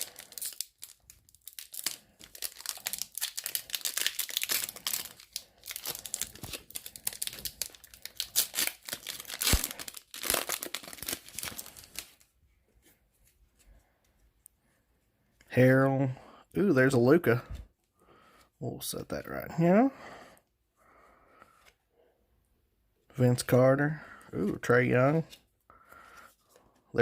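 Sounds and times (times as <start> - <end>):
wrapper tearing and crumpling: 0.0 - 12.2.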